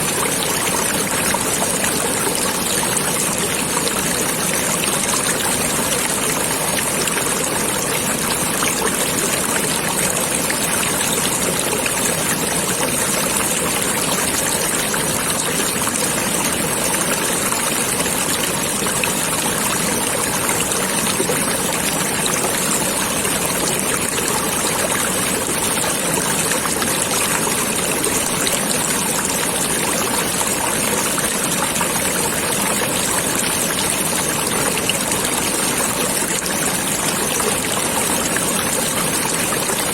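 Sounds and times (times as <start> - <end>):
stream water flowing: 0.0 - 39.9.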